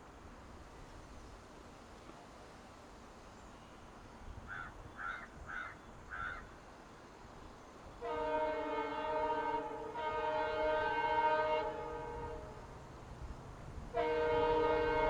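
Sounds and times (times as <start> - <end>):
locomotive horn blasts: 8.0 - 12.8, 13.9 - 15.0.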